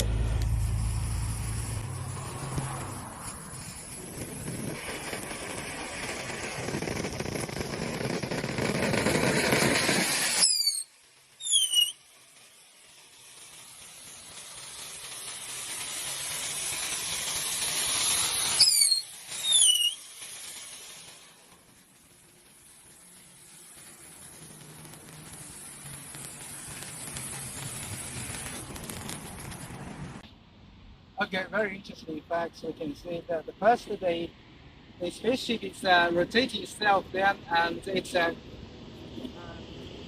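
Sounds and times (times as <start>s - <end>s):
firework hissing: 0.0s - 30.2s, 31.6s - 40.0s
firework whistles: 0.0s - 30.2s.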